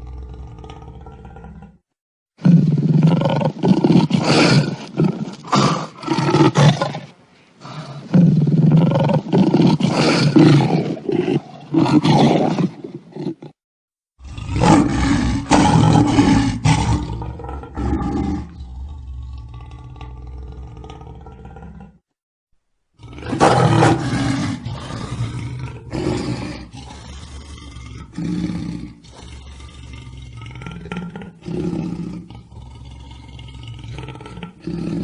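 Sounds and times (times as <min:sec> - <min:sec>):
lion roaring: 0:00.0 - 0:01.8, 0:14.2 - 0:22.0, 0:23.0 - 0:35.0.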